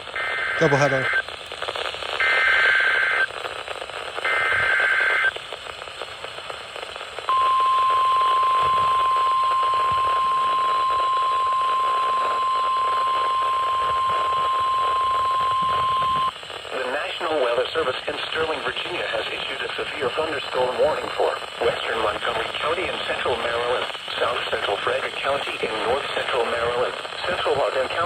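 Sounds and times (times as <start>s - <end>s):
radio static hiss: 0.0s - 28.0s
data bursts: 0.2s - 1.2s, 7.3s - 16.3s
steady alarm tone: 7.3s - 16.3s.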